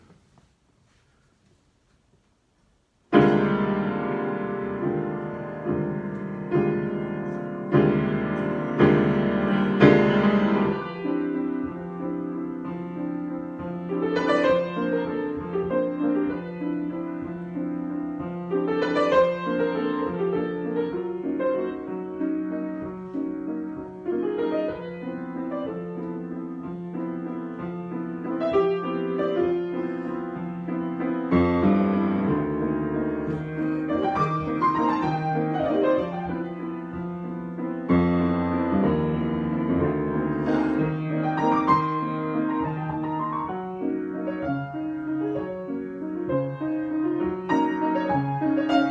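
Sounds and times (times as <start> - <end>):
solo piano improvisation: 3.1 - 48.9.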